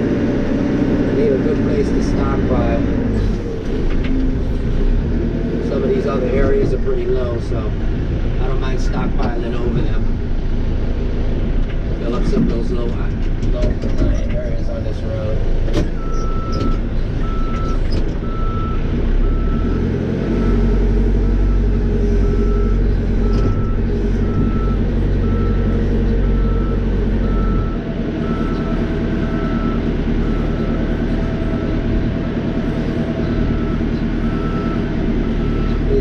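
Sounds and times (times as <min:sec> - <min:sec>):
diesel engine running: 0:00.0 - 0:36.0
reversing alarm beeping: 0:16.0 - 0:31.9, 0:33.4 - 0:36.0.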